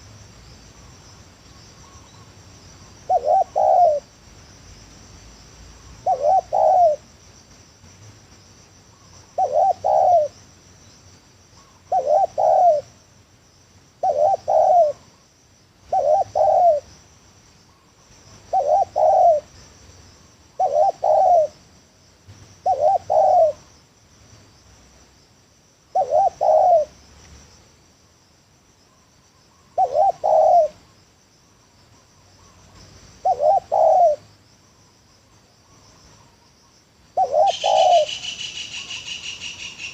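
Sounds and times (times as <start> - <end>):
high insect buzz: 0.0 - 39.9
dove cooing: 3.1 - 4.1, 6.0 - 7.0, 9.0 - 10.4, 11.6 - 13.0, 14.0 - 15.2, 15.9 - 16.9, 18.4 - 19.5, 20.6 - 21.5, 22.6 - 23.7, 25.9 - 27.0, 29.6 - 30.8, 33.2 - 34.3, 37.2 - 39.9.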